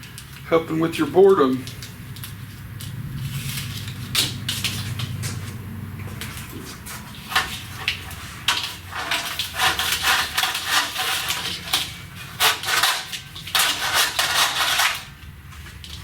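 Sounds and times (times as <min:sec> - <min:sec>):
metal and plastic parts rattling: 0:07.1 - 0:15.2.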